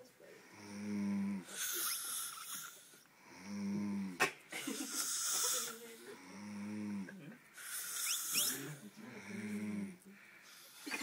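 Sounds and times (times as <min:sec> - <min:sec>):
low pitched snores: 0:00.5 - 0:04.2, 0:05.0 - 0:10.0
hissing breath: 0:01.4 - 0:03.5, 0:04.7 - 0:05.9, 0:07.6 - 0:09.6.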